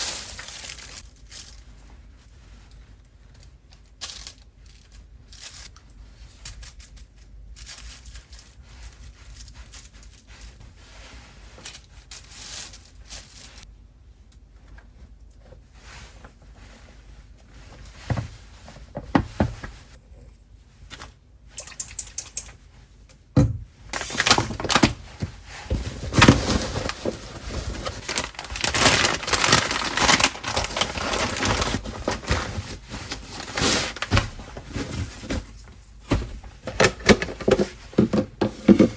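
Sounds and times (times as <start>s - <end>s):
containers and utensils clicking: 21.6s - 22.6s
crackling rustling and clattering: 23.9s - 38.9s.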